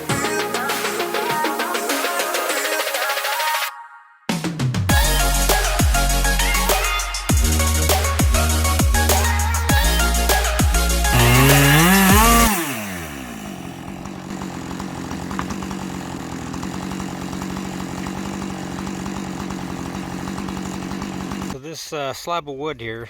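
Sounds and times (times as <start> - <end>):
chainsaw cutting log: 0.0 - 3.6, 4.9 - 21.6
electronic music with heavy bass: 4.9 - 12.2.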